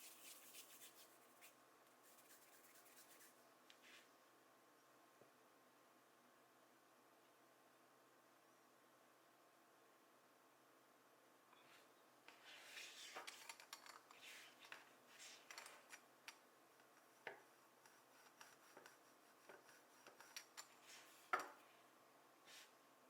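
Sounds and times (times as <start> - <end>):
faint rubbing of modelling clay: 0.0 - 4.2, 11.6 - 16.0, 16.8 - 21.8, 22.4 - 22.8.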